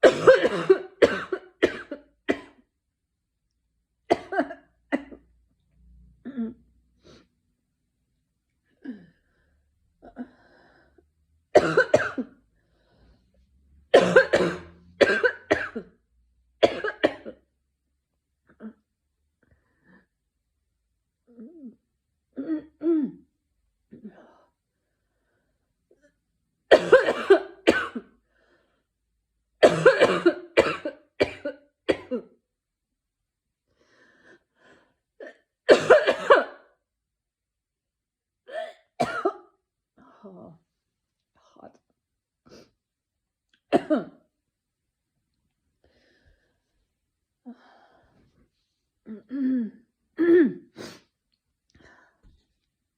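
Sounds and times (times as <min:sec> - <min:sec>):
person coughing: 0:00.0 - 0:02.6, 0:04.1 - 0:05.2, 0:11.6 - 0:12.3, 0:14.0 - 0:15.9, 0:16.6 - 0:17.4, 0:26.7 - 0:28.1, 0:29.6 - 0:32.4, 0:35.2 - 0:36.7, 0:38.5 - 0:39.6, 0:43.7 - 0:44.2, 0:50.2 - 0:51.0.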